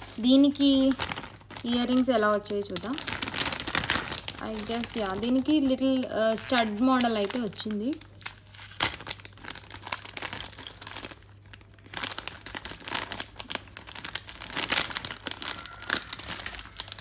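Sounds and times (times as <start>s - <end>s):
packaging crinkling and rustling: 0.0s - 17.0s.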